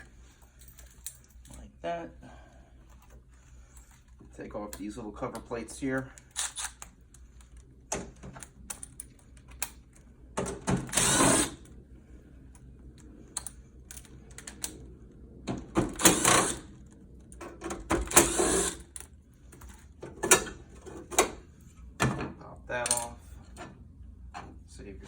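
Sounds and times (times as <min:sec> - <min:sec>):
power driver backing out screws: 0:10.8 - 0:11.6, 0:15.8 - 0:16.6, 0:18.0 - 0:18.8.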